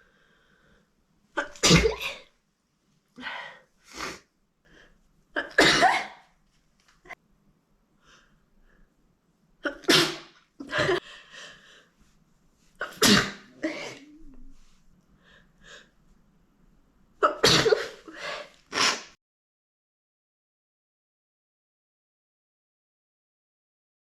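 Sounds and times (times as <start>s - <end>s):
woman sneezing: 1.4s - 2.3s, 12.8s - 14.4s, 17.2s - 19.2s.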